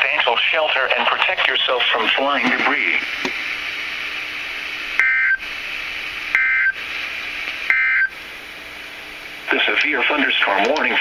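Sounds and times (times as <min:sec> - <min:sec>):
radio hiss: 0:00.0 - 0:11.0.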